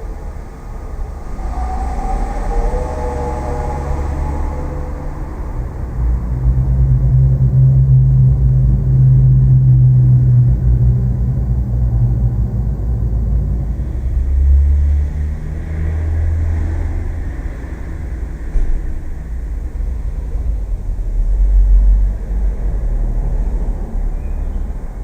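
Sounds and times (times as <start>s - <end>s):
low rumble with deep hums: 0.0s - 25.0s.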